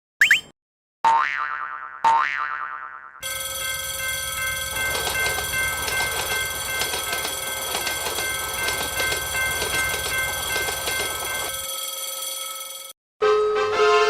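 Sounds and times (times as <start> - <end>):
train rumbling and rattling: 3.2 - 11.6
level-crossing warning bell: 3.2 - 14.0.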